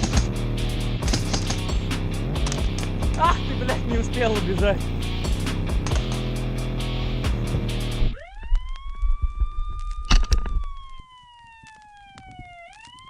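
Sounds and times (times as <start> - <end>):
sharp clicks: 0.0 - 0.4, 1.0 - 3.4, 5.8 - 6.4
background music: 0.0 - 8.2
loud crack: 1.0 - 3.4
siren wailing: 7.9 - 13.0.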